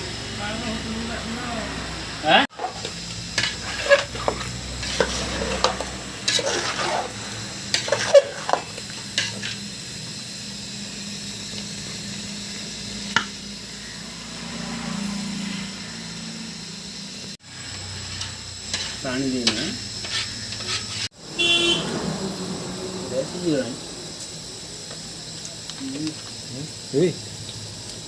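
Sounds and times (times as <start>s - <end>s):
frying sizzle: 0.0s - 28.0s
spoon scraping and knocking pan: 2.5s - 9.7s, 17.4s - 21.1s.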